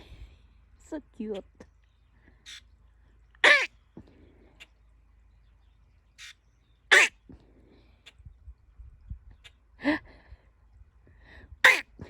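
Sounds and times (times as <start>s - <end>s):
bird rasping calls: 2.4s - 2.7s, 3.4s - 3.8s, 6.2s - 7.2s, 11.6s - 11.9s.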